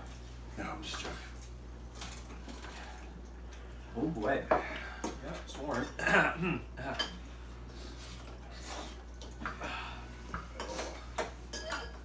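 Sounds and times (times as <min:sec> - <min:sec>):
cutlery clinking against bowls: 0:06.9 - 0:07.3, 0:10.3 - 0:12.0.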